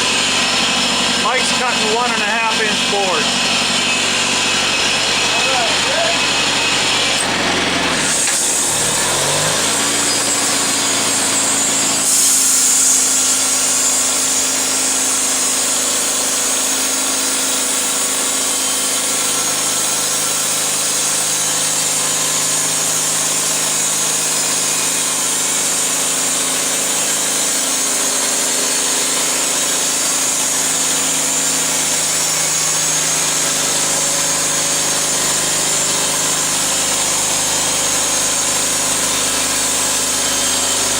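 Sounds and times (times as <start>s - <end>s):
saw blade hissing through wood: 0.0s - 40.9s
sawmill engine under load: 0.0s - 40.9s.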